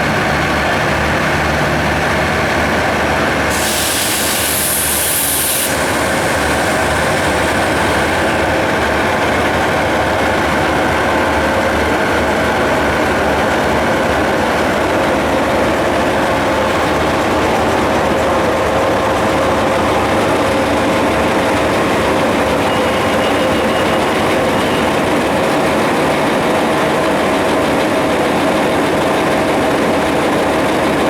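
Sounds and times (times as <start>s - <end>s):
diesel locomotive idling: 0.0s - 31.0s
loud hiss: 3.4s - 8.6s.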